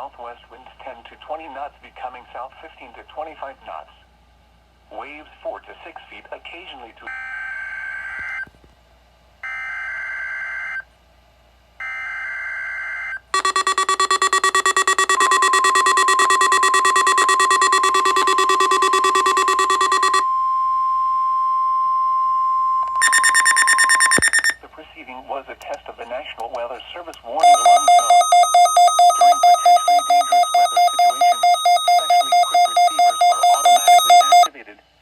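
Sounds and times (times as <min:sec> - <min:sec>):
screechy digital header bursts: 0:13.4 - 0:20.2, 0:27.4 - 0:34.5
steady warning alarm tone: 0:13.4 - 0:24.6, 0:27.4 - 0:34.5
weather radio alarm beeping: 0:13.4 - 0:24.6, 0:27.4 - 0:34.5.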